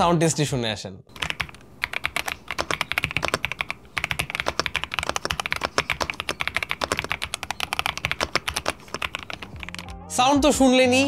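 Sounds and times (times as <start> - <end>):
fast typing on mechanical keyboard: 1.1 - 9.9.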